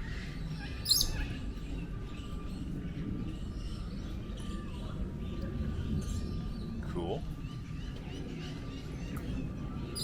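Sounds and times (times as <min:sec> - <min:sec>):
shrill bird chirp: 0:00.5 - 0:01.3.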